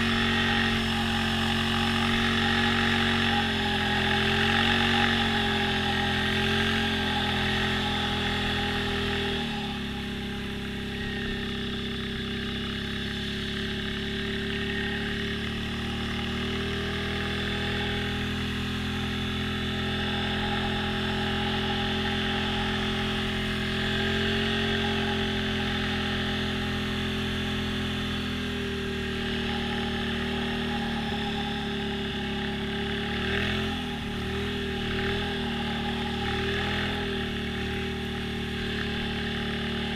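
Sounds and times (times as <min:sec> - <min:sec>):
atv engine running: 0:00.0 - 0:39.9.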